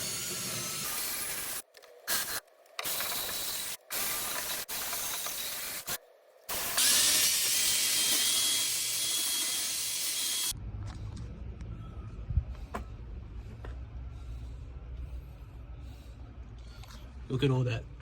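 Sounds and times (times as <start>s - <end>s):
thin steady drill whine: 0.0s - 1.6s, 2.2s - 10.5s.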